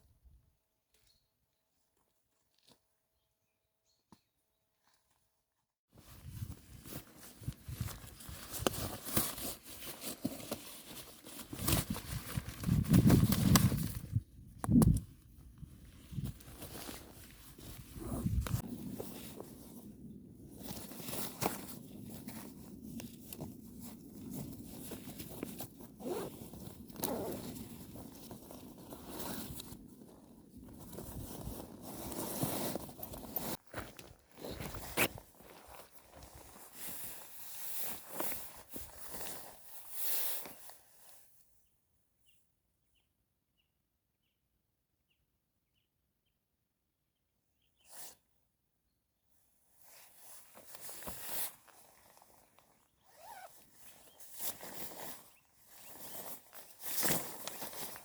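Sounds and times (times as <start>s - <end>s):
rustling and crinkling: 6.0s - 41.2s, 49.7s - 58.0s
zipper being pulled: 17.6s - 18.6s, 25.5s - 29.8s, 30.8s - 33.6s, 53.0s - 55.2s.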